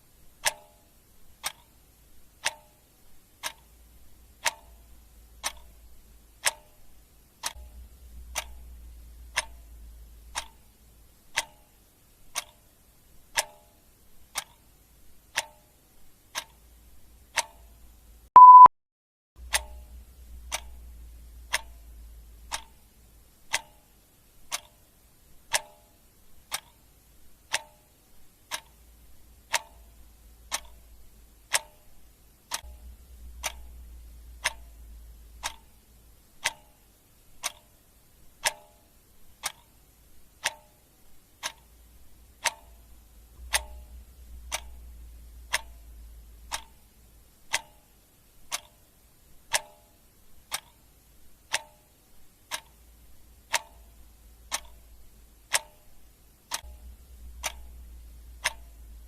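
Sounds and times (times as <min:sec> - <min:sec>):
clock ticking: 0:00.2 - 0:18.7, 0:19.4 - 0:59.0
short high beep: 0:18.4 - 0:18.7.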